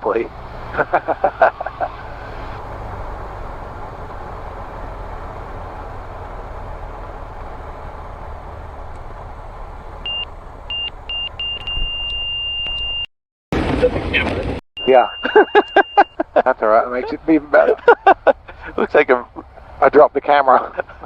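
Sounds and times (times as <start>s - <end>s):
stall warning horn beeping: 10.1s - 13.1s, 14.8s - 16.2s
air rushing in cabin: 11.5s - 13.0s.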